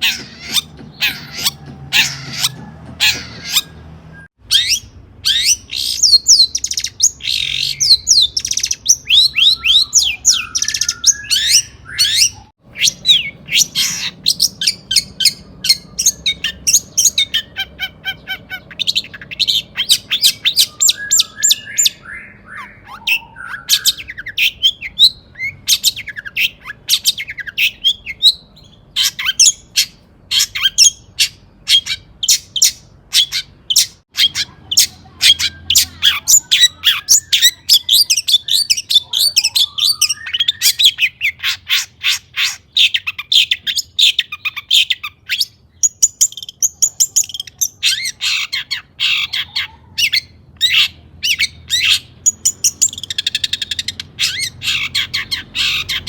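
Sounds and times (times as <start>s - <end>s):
bird chattering song: 0.0s - 56.0s.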